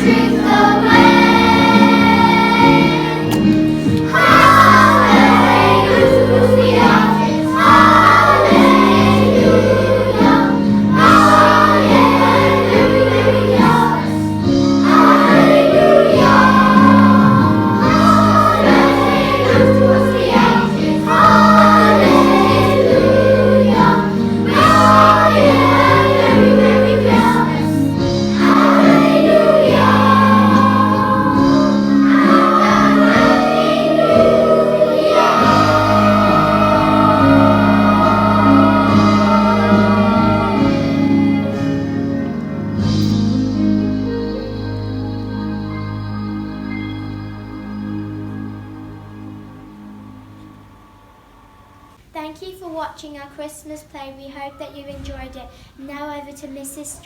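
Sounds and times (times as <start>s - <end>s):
children's choir singing: 0.0s - 43.2s
held instrumental chords: 0.0s - 52.1s.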